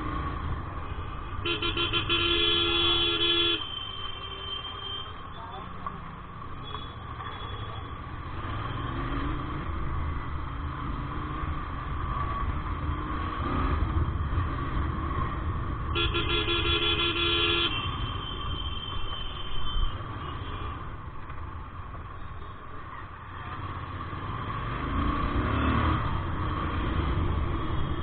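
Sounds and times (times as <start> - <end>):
vehicle horn: 1.3 - 5.2, 15.9 - 20.7
motorcycle engine rumble: 17.8 - 24.6.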